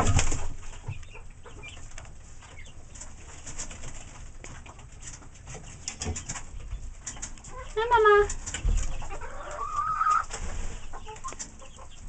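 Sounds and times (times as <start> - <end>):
chicken peeps: 0.0 - 12.0
chickens cooing softly: 7.4 - 12.0.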